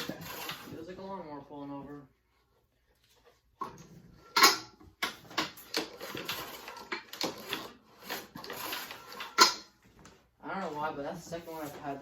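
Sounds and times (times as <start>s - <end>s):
plastic scraping on metal: 0.0s - 1.0s, 3.6s - 9.8s
mower engine turned over by hand: 4.3s - 9.7s.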